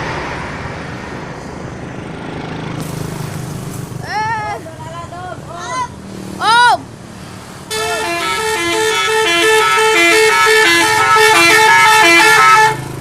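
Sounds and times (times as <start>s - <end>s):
bus musical horn melody: 7.7s - 13.0s.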